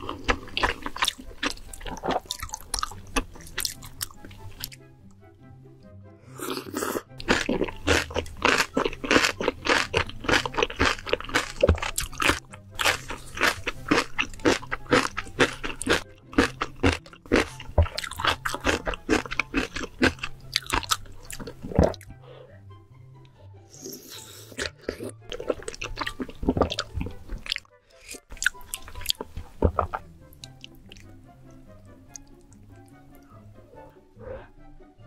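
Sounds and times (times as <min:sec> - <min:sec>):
chewing crunchy food: 0:00.0 - 0:04.8, 0:06.4 - 0:22.1, 0:23.8 - 0:31.1
soft background music: 0:00.0 - 0:35.0.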